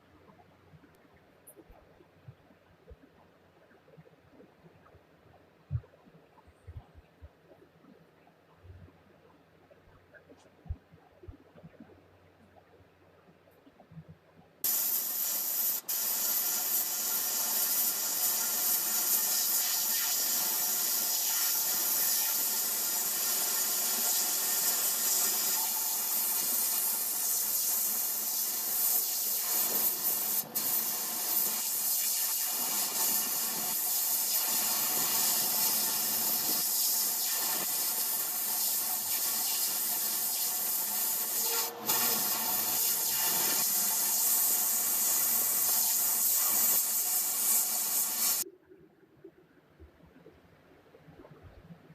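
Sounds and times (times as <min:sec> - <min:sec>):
steady high hiss: 0:14.6 - 0:48.4.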